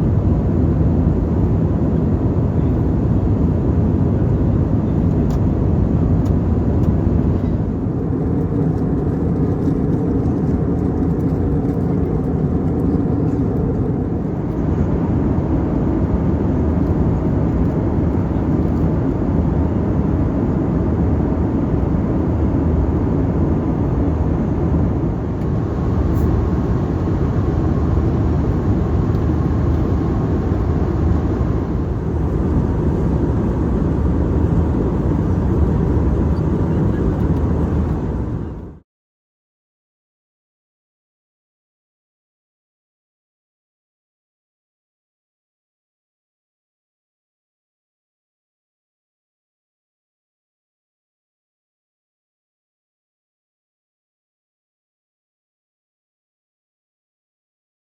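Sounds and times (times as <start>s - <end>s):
airplane cabin engine rumble: 0.0s - 38.8s.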